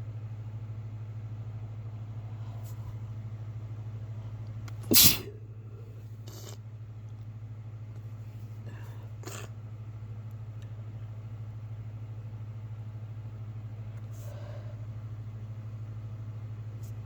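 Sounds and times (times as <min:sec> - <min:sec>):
low fluttering hum: 0:00.0 - 0:17.0
man sniffing: 0:04.9 - 0:05.3.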